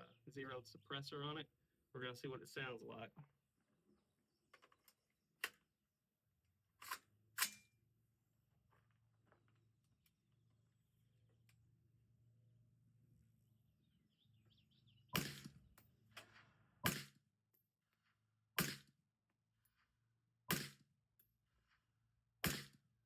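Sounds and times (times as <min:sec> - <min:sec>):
suppressed rifle shots: 0:15.2 - 0:15.6, 0:16.2 - 0:17.1, 0:18.6 - 0:18.9, 0:22.4 - 0:22.8.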